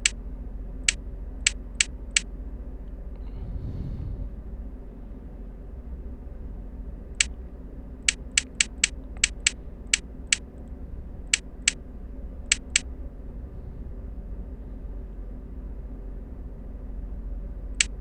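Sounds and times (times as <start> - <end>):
steady low hum: 0.0 - 18.0
keno game clicks: 0.8 - 2.3, 8.0 - 10.5, 11.3 - 11.8, 12.5 - 12.8, 17.8 - 18.0.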